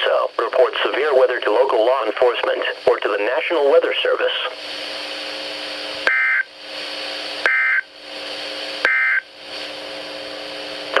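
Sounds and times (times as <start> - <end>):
radio hiss: 0.0 - 11.0.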